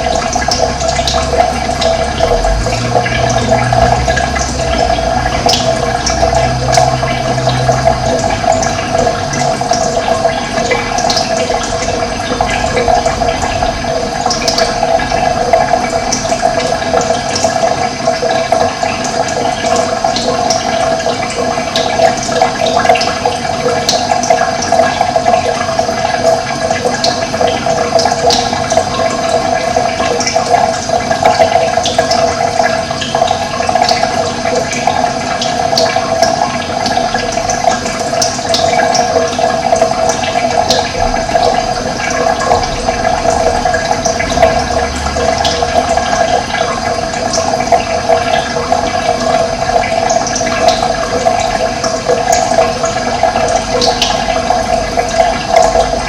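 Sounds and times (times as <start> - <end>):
water rushing: 0.0 - 56.0.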